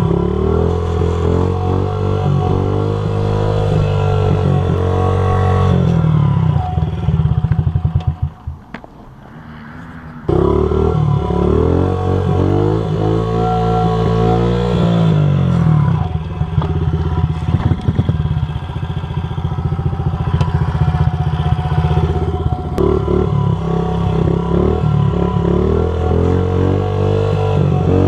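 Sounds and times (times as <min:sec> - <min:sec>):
dirt bike engine running: 0:00.0 - 0:09.3, 0:10.3 - 0:28.0.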